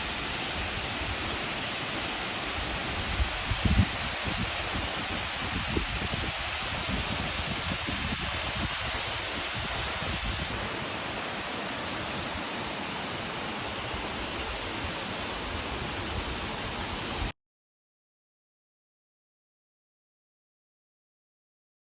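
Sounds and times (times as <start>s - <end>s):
waterfall rushing: 0.0s - 17.3s.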